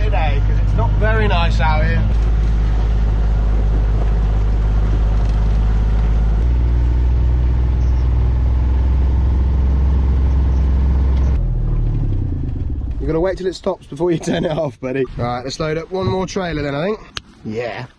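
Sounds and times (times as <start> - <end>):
small vehicle engine running: 0.0 - 13.0.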